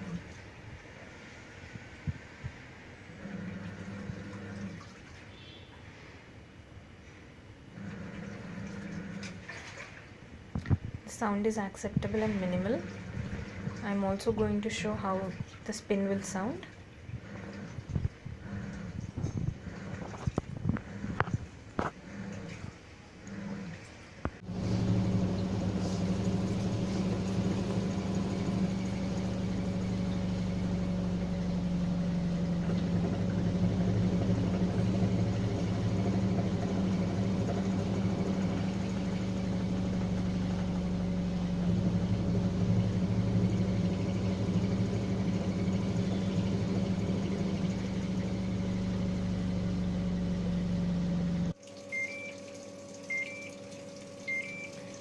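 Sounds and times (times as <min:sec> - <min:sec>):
washing machine spinning hum: 0:00.0 - 0:55.0
electronic beeps: 0:51.9 - 0:52.4, 0:53.1 - 0:53.6, 0:54.3 - 0:54.8.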